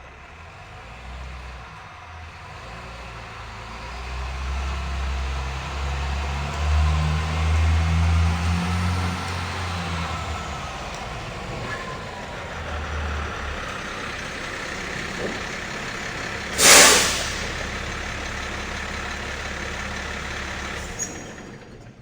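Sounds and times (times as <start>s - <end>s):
truck engine idling: 0.0s - 22.0s
air brake hiss: 16.4s - 18.0s.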